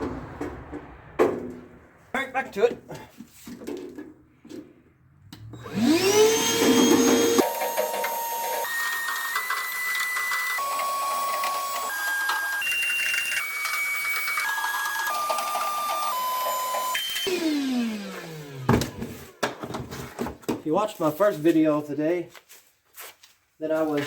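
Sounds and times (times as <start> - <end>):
handheld vacuum motor whine: 5.6 - 19.4.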